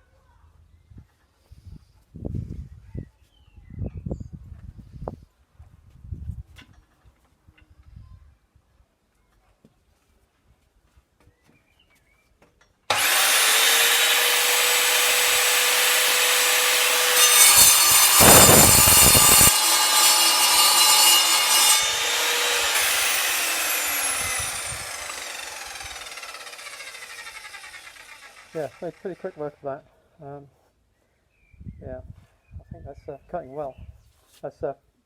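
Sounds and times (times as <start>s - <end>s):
saw blade cutting steel bar: 12.9s - 29.0s
mitre saw whining: 12.9s - 29.3s
saw blade winding down: 12.9s - 29.4s.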